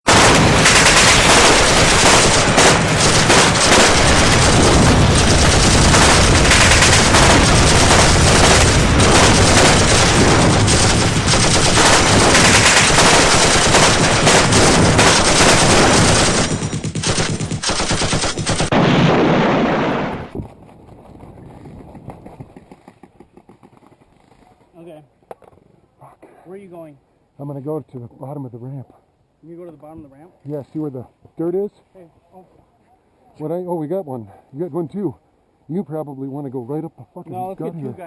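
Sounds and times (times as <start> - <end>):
gunshots: 0.1 - 20.4
machine-gun fire: 0.1 - 20.4.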